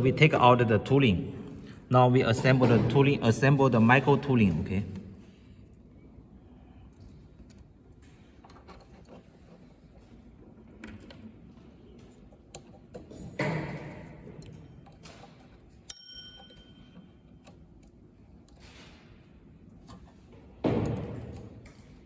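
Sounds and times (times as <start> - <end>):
sharp metallic ping: 15.9 - 16.8.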